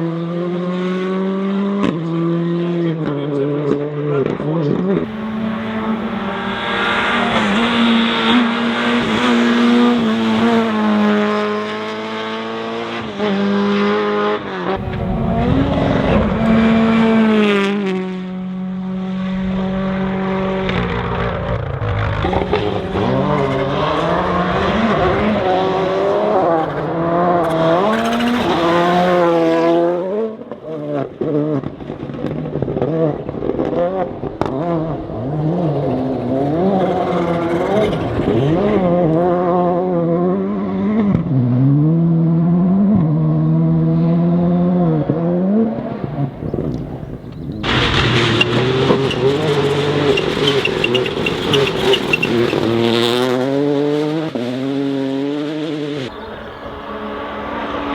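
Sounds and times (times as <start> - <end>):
rally car engine revving: 0.0 - 57.9
harsh rushing noise: 5.1 - 10.7, 14.8 - 17.7, 46.4 - 53.1.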